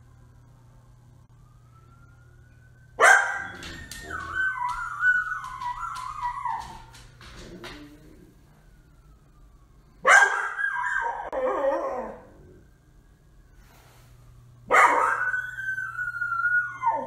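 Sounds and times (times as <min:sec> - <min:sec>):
dog howling barks: 0:03.0 - 0:07.8, 0:10.0 - 0:12.3, 0:14.7 - 0:17.0.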